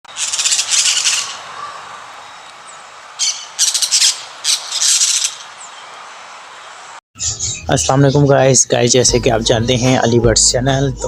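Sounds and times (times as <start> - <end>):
budgerigars squawking: 0.1 - 2.5, 3.2 - 5.5.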